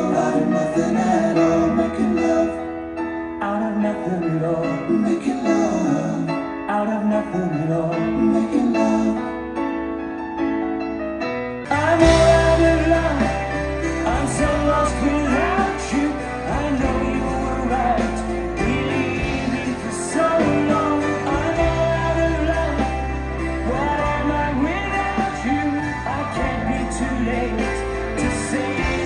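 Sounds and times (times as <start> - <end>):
person singing: 0.0 - 9.5, 11.6 - 29.0
guitar: 0.0 - 29.0
steady bass: 11.7 - 29.0.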